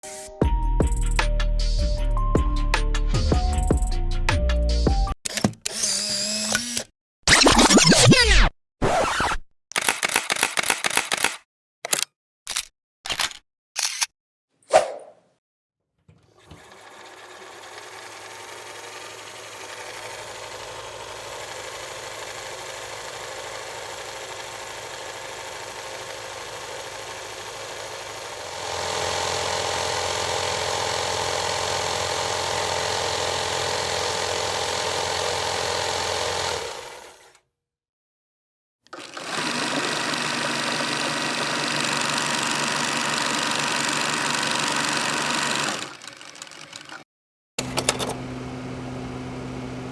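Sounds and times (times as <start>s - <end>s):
mechanical running sound: 9.7s - 12.6s, 16.4s - 37.4s, 38.9s - 47.0s, 47.6s - 49.9s
motor running: 9.8s - 11.4s, 16.4s - 37.4s, 38.9s - 47.0s, 47.6s - 49.9s.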